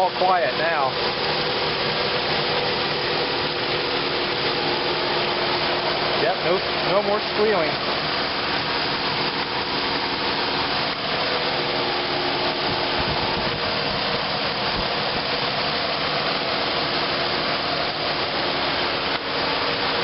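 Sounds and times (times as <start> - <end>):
car engine idling: 0.0 - 20.0
radiator cooling fan rushing: 0.0 - 20.0.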